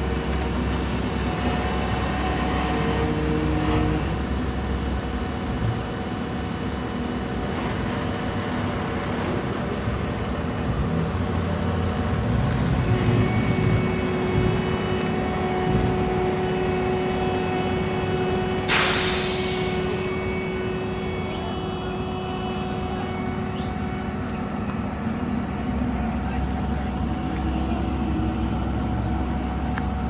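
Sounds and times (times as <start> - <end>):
diesel machinery rumbling: 0.0 - 30.0
air brakes hissing: 0.7 - 2.1, 17.5 - 23.8.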